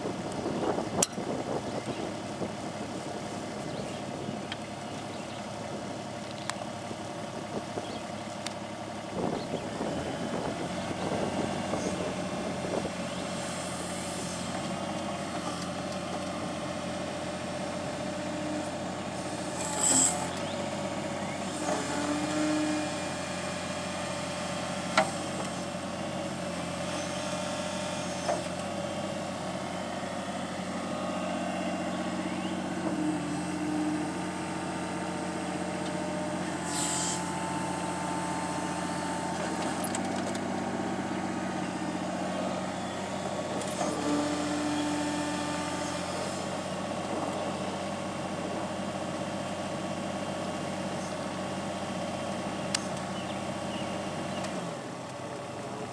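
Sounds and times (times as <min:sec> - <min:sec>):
excavator diesel engine drone: 0:00.0 - 0:55.9
hydraulic whine: 0:18.0 - 0:25.7, 0:26.7 - 0:47.6.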